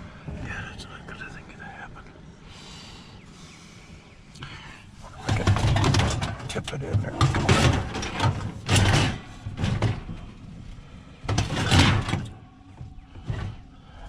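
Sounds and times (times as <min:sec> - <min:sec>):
heavy scrap scraping and bumping: 0:05.1 - 0:10.3.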